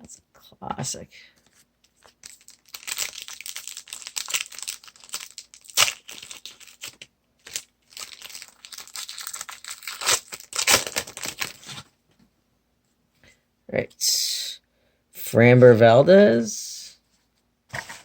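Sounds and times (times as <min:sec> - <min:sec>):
wrapper tearing and crinkling: 0:02.0 - 0:11.9.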